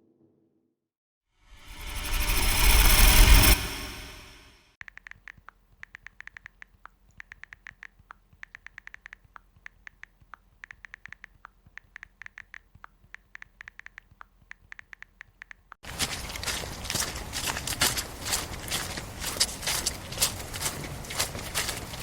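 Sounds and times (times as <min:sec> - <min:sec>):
loud rough sound: 0:01.5 - 0:04.6.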